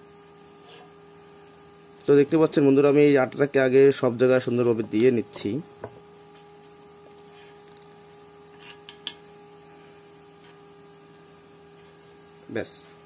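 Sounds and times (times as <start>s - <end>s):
faint electrical hum: 0.0s - 13.0s.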